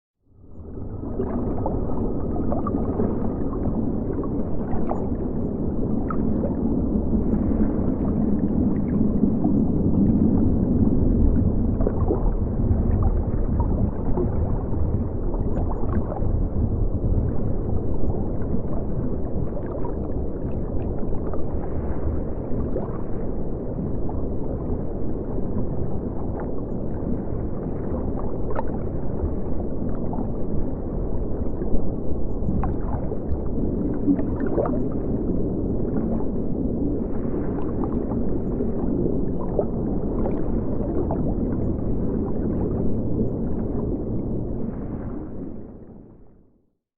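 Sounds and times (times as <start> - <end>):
muffled underwater rumble: 0.2 - 46.9
bubbles popping and gurgling: 0.9 - 5.1, 11.5 - 21.4, 32.5 - 36.3.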